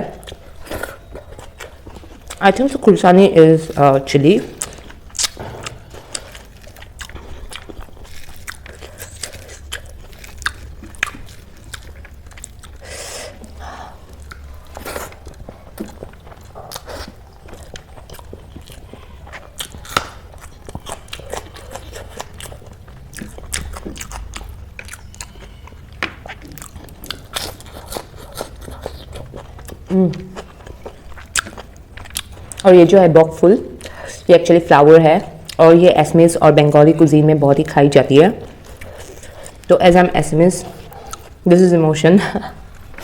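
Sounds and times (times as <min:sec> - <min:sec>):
person chewing crunchy food: 0:00.0 - 0:02.9, 0:03.6 - 0:32.7, 0:38.4 - 0:39.8, 0:40.6 - 0:41.5.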